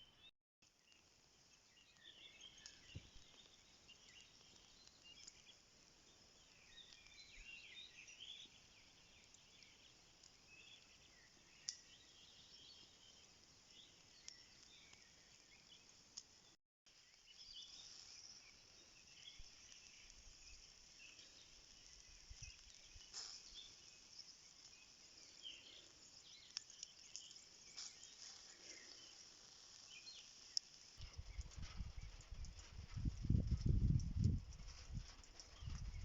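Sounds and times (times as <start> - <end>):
insects hissing: 17.0 - 31.0.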